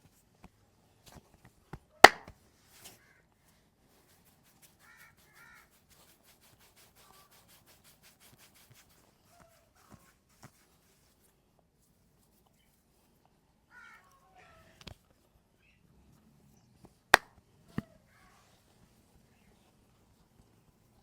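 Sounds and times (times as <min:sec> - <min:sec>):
hands tapping and slapping skin: 0:02.0 - 0:02.4, 0:17.2 - 0:17.4.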